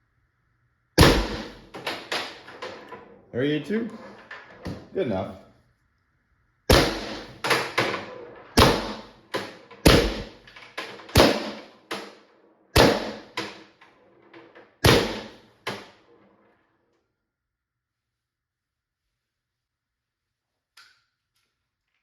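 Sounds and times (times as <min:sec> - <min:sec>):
paintball marker firing: 0:01.0 - 0:02.4, 0:06.7 - 0:07.8, 0:08.6 - 0:10.4, 0:11.0 - 0:13.4, 0:14.8 - 0:16.0.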